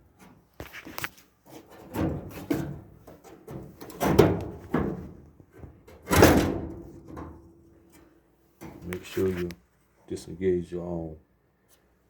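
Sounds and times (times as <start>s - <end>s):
dryer panel knocking and rattling: 1.9s - 5.2s, 5.9s - 7.4s.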